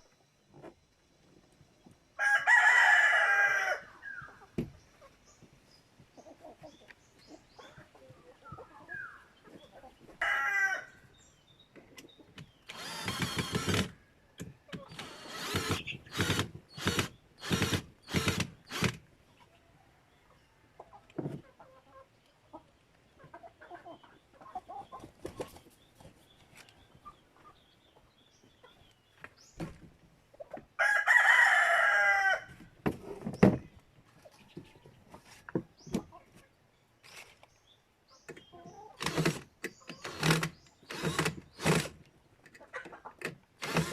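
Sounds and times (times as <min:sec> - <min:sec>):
chickens clucking: 0:00.0 - 0:12.7, 0:13.9 - 0:15.0, 0:15.7 - 0:30.9, 0:31.8 - 0:43.6
rooster crowing: 0:02.2 - 0:04.1, 0:10.2 - 0:11.0, 0:30.8 - 0:32.5.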